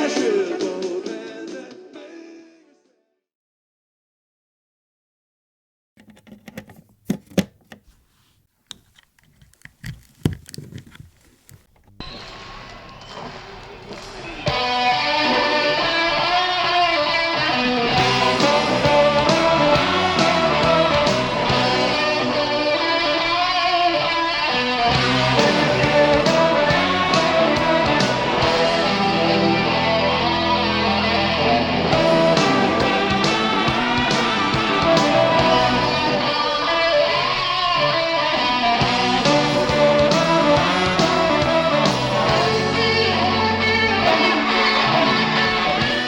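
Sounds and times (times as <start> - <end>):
turntable clicks and knocks: 6.0 - 7.9
guitar music from a record player: 12.0 - 46.0.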